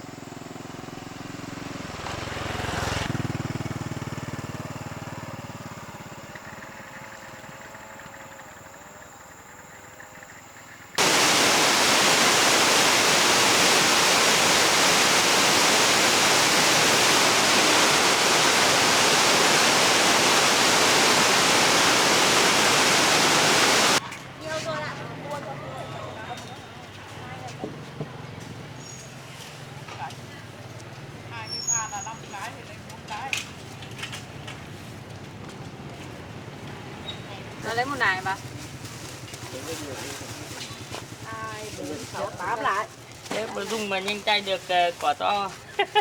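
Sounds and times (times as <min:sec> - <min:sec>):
vehicle engine passing: 0:00.0 - 0:07.8
loud steady rushing hiss: 0:11.0 - 0:24.0.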